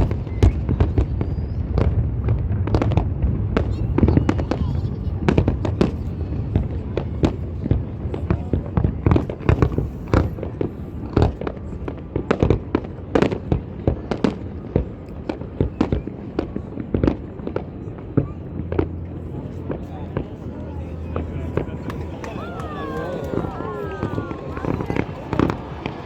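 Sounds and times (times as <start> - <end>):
fireworks bangs and cracks: 0.0 - 26.0
low rumble of distant bursts: 16.1 - 26.0.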